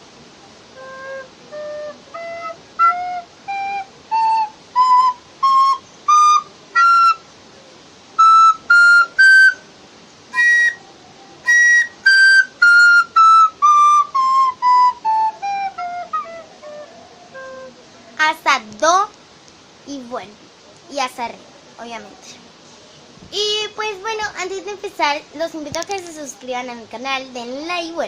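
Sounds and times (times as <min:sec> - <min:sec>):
recorder playing a scale: 0:00.8 - 0:07.2, 0:08.2 - 0:09.6, 0:10.3 - 0:10.8, 0:11.4 - 0:17.8.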